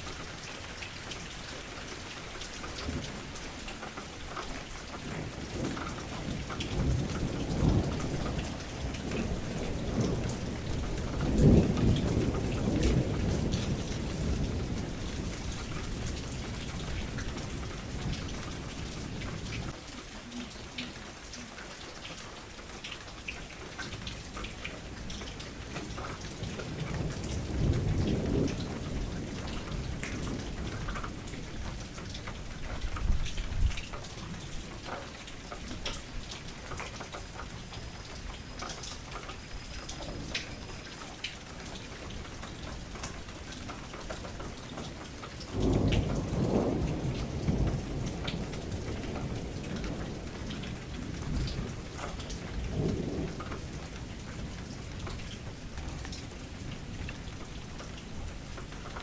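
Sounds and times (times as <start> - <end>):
steady rain falling: 0.0 - 59.0
thunder rumbling: 4.9 - 21.3, 24.9 - 34.9, 43.8 - 59.0.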